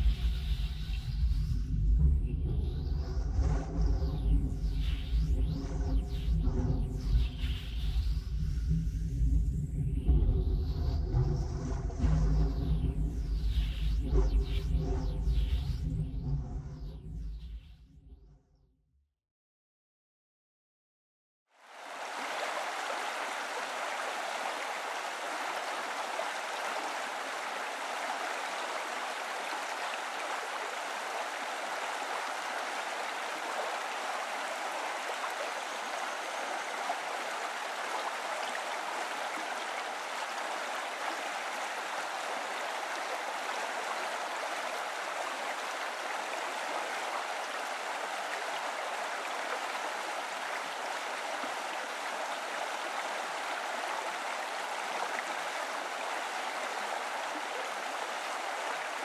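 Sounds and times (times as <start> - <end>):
flowing water rushing: 21.6 - 59.0.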